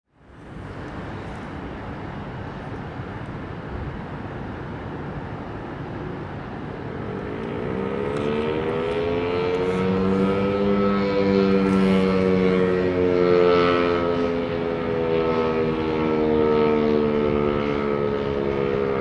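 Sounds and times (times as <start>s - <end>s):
outdoor background noise: 0.1s - 19.0s
tornado siren growling: 5.6s - 19.0s.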